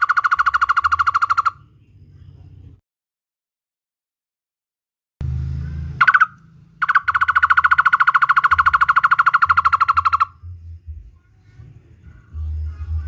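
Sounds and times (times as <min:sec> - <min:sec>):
bird repeating hollow notes: 0:00.0 - 0:01.6, 0:06.0 - 0:10.4
low hum: 0:05.2 - 0:13.0.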